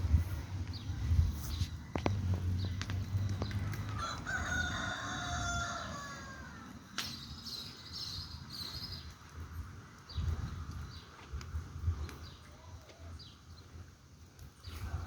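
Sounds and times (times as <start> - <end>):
rooster crowing: 3.8 - 6.8.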